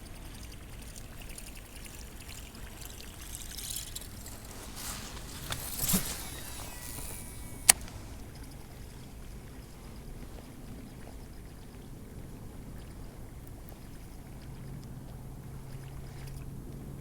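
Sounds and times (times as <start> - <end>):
water splashing and trickling: 0.0 - 8.5
sharp click: 3.4 - 8.0.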